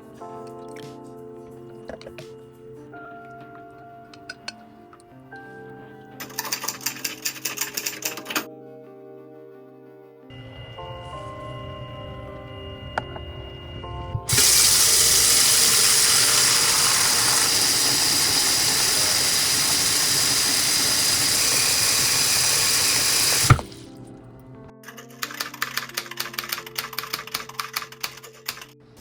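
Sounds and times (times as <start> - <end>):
soft lo-fi music: 0.0 - 15.8, 23.6 - 29.0
tap running into a sink: 10.3 - 23.8.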